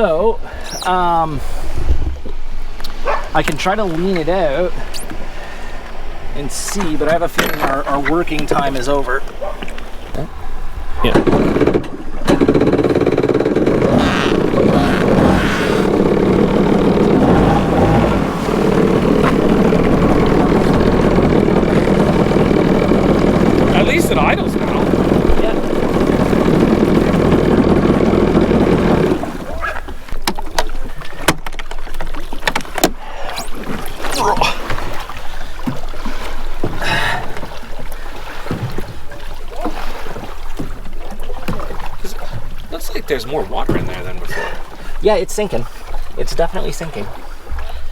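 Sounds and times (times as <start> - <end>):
water sloshing: 0.4 - 47.9
watercraft engine idling: 3.0 - 30.2.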